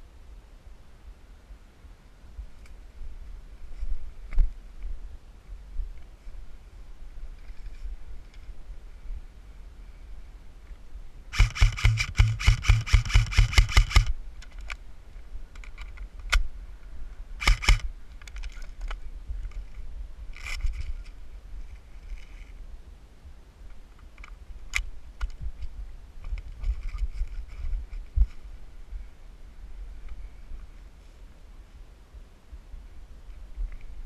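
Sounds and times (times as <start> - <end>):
low wind rumble on microphone: 0.0 - 34.0
airsoft gun firing: 11.3 - 14.1, 17.4 - 17.9
sharp click: 11.4 - 14.8, 17.4 - 18.6.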